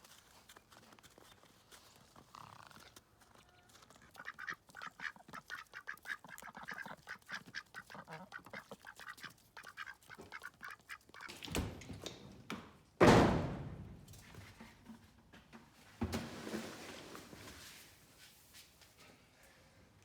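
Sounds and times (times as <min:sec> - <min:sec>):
ducks quacking: 0:04.1 - 0:11.3.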